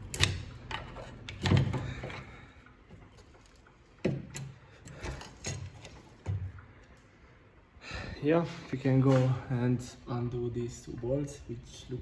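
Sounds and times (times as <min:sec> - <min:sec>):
tools knocking and clicking: 0:00.0 - 0:02.3.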